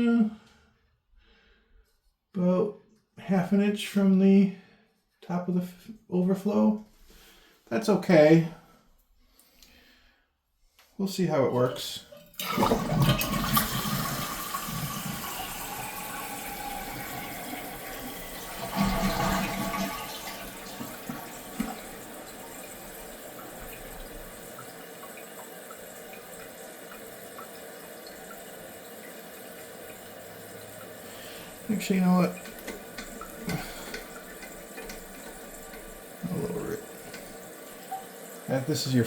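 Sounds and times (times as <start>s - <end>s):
fill valve hissing: 11.6s - 39.0s
toilet flushing: 11.6s - 39.0s.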